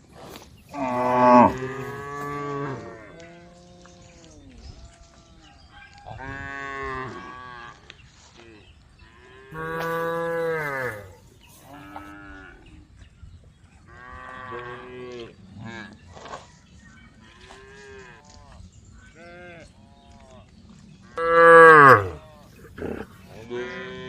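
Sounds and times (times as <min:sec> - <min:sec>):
cows mooing: 0:00.7 - 0:03.0, 0:09.6 - 0:12.2, 0:21.2 - 0:23.7.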